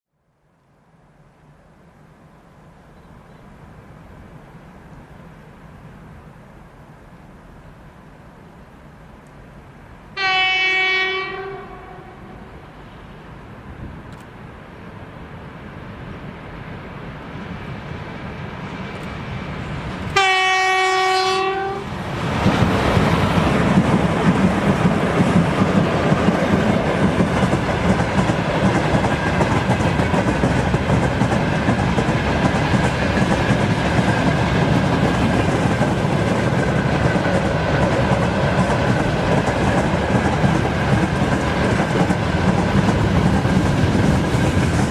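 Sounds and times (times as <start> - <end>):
locomotive horn blast: 10.2 - 12.4, 20.1 - 21.9
train wheels rolling over rail joints: 13.6 - 44.9.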